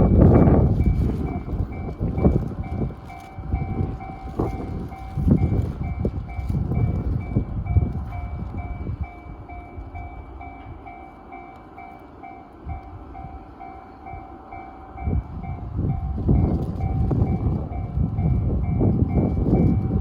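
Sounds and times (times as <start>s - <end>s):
train rumbling past: 0.0s - 20.0s.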